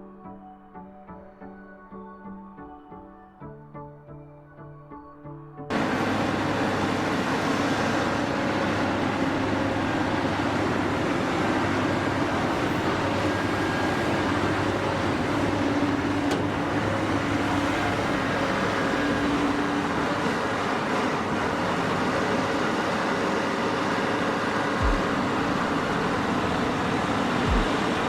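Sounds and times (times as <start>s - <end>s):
heavy vehicle engine rumbling: 5.7s - 28.0s.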